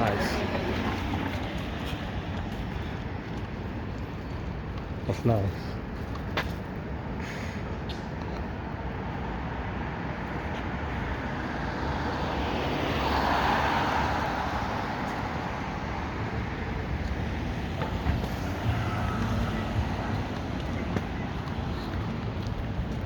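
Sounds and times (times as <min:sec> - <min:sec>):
car passing: 0:00.0 - 0:03.2, 0:09.2 - 0:23.0
steady traffic noise: 0:00.0 - 0:23.0.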